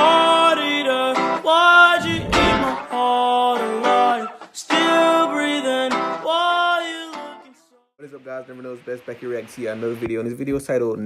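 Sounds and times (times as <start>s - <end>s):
guitar intro music: 1.1s - 6.4s
low hit: 2.0s - 2.8s.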